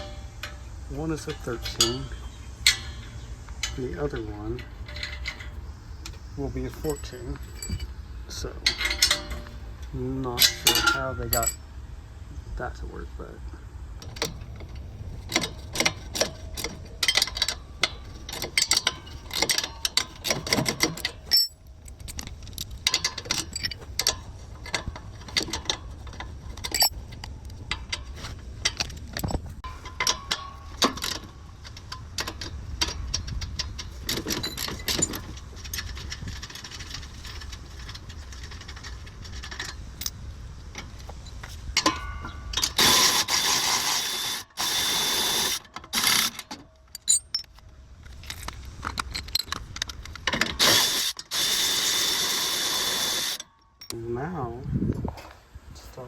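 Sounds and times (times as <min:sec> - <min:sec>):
metal clinking: 0:00.0 - 0:11.6, 0:14.0 - 0:54.0
steady low hum: 0:00.0 - 0:44.6.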